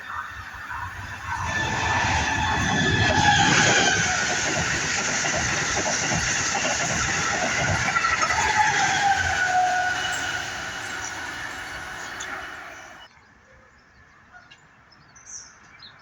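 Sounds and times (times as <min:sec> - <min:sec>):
train wheel squeal: 0:00.0 - 0:13.1
train wheels rumbling: 0:00.0 - 0:13.1.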